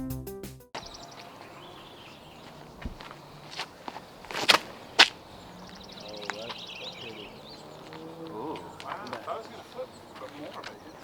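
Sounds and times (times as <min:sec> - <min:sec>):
footsteps scuffing: 0:00.8 - 0:11.0
soft low thud: 0:02.8 - 0:03.2.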